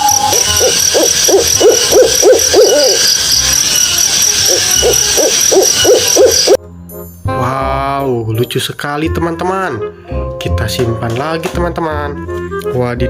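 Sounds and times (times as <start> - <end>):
owl hooting: 0.0 - 6.6
high-pitched ringing: 0.0 - 7.3
fast ticking: 0.1 - 6.6.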